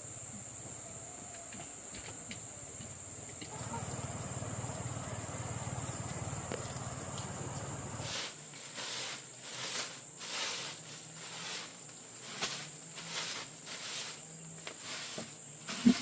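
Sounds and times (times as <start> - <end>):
high-pitched insect buzz: 3.6 - 16.0.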